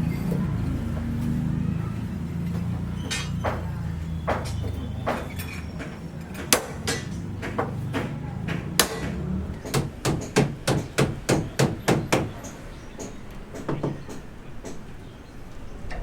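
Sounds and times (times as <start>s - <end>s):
hammer strikes: 2.6s - 14.8s.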